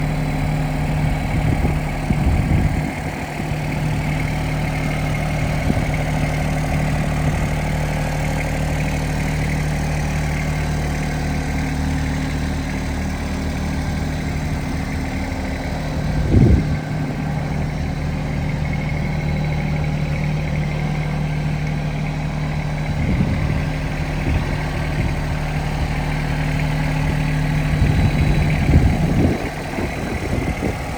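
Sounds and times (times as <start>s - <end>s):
tractor diesel engine running: 0.0s - 30.9s
short low thumps: 14.4s - 18.6s.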